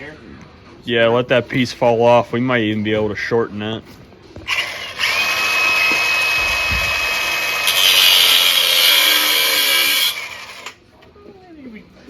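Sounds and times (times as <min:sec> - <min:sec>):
angle grinder cutting metal: 0:04.5 - 0:10.8.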